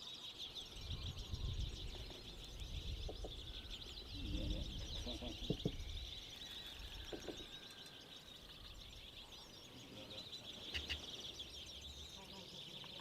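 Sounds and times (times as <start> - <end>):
small birds chirping: 0.0 - 13.0.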